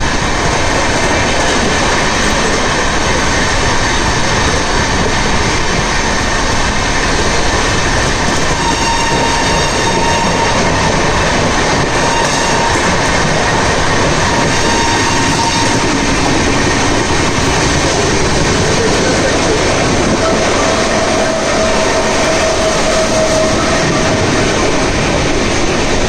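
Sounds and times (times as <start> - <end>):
train wheels rushing on rails: 0.0 - 26.0.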